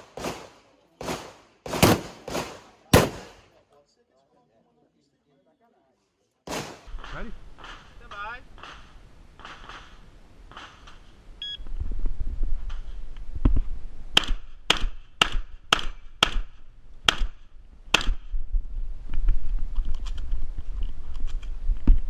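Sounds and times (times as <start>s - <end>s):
shotgun shots: 0.0s - 3.6s, 6.5s - 8.0s.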